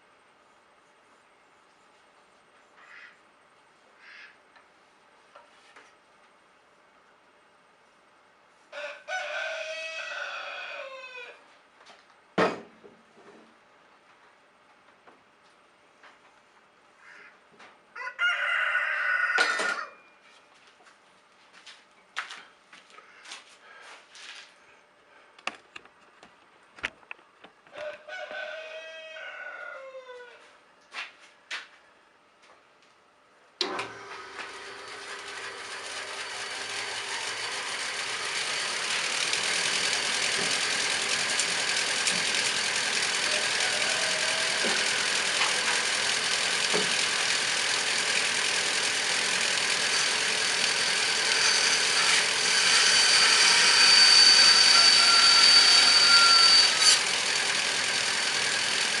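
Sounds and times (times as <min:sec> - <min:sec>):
rooster crowing: 0:08.7 - 0:11.4, 0:17.9 - 0:20.1, 0:27.7 - 0:30.5, 0:43.0 - 0:45.1.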